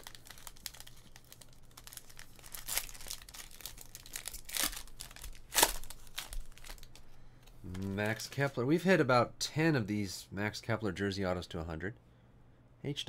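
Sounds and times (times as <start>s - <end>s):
card packaging crinkling: 0.0s - 8.5s.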